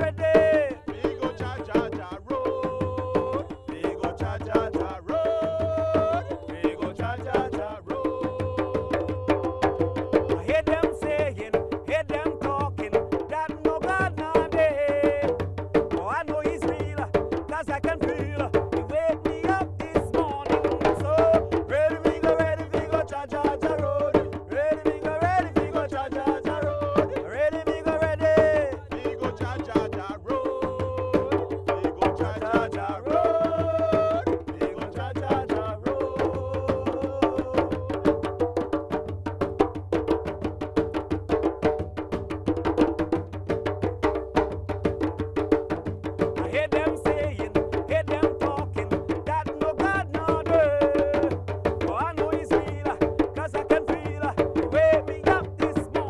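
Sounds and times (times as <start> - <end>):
ensemble drumming: 0.0 - 11.5, 23.6 - 38.8
voices singing folk chant: 0.0 - 38.6, 46.4 - 56.0.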